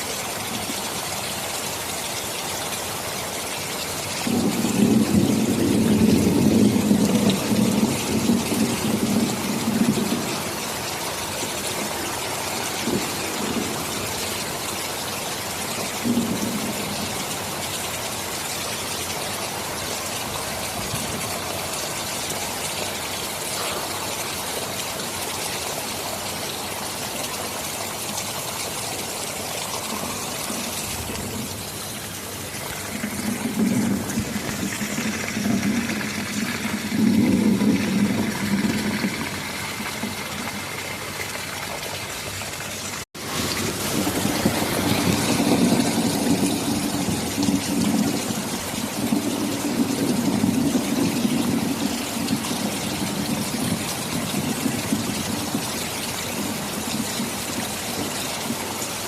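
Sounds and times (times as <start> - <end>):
heavy rain hissing: 0.0 - 59.0
thunder rumbling: 4.2 - 15.0, 15.8 - 17.4, 29.5 - 41.4, 43.2 - 58.1.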